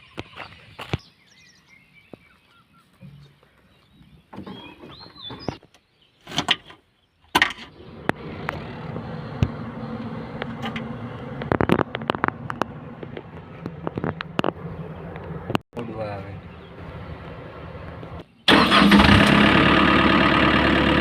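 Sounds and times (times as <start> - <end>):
knocks and scrapes: 4.3 - 15.6
heavy diesel engine running: 7.8 - 15.5, 18.5 - 21.0
sharp clicks and knocks: 10.4 - 15.6.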